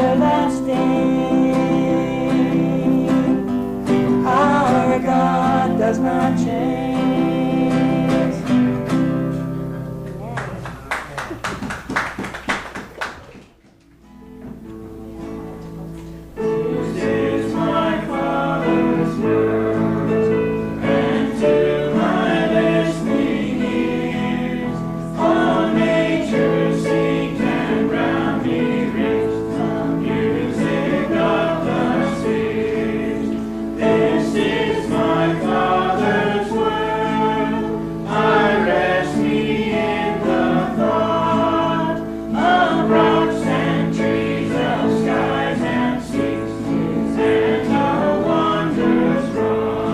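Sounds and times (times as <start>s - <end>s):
choir singing a hymn: 0.0s - 9.6s, 16.3s - 49.9s
instrumental accompaniment: 13.6s - 49.9s.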